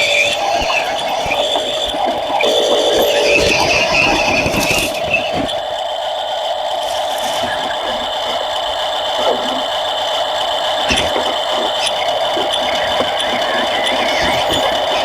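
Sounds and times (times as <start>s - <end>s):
electric motors whining: 0.0s - 15.0s.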